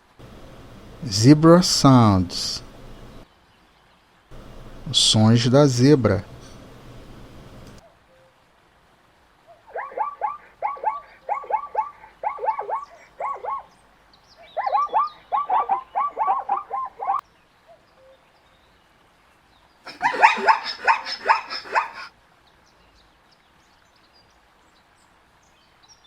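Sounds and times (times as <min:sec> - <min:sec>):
zebra yelping calls: 0:09.6 - 0:13.7, 0:14.5 - 0:17.2, 0:19.9 - 0:22.1.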